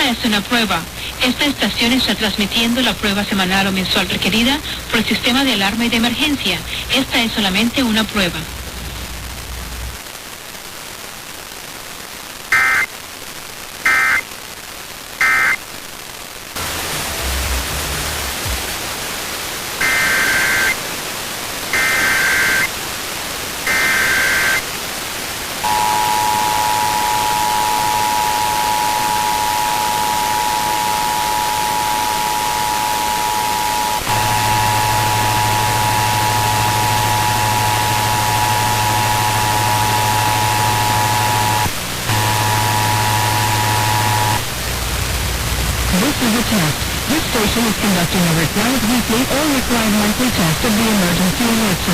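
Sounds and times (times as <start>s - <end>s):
radio static hiss: 0.0s - 51.9s
warbling data bursts: 23.7s - 24.6s, 25.6s - 44.5s
two-tone attention signal: 25.6s - 44.4s
low hum: 25.6s - 47.2s.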